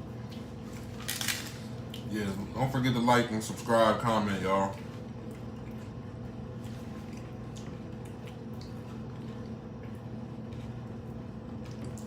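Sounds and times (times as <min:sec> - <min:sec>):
low electrical hum: 0:00.0 - 0:12.0
wet chewing and mouth clicks: 0:04.7 - 0:12.0.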